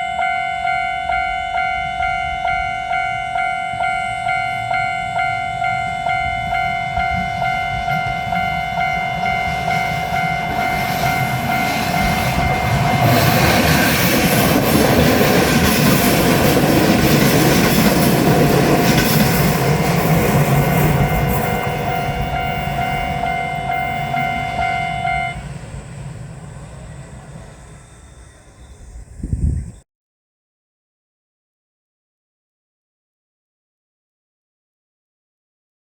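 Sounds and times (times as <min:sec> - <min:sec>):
level crossing bell dinging: 0:00.0 - 0:13.4, 0:20.4 - 0:25.4
electric train passing: 0:00.0 - 0:29.5
train wheel clatter: 0:06.3 - 0:27.9.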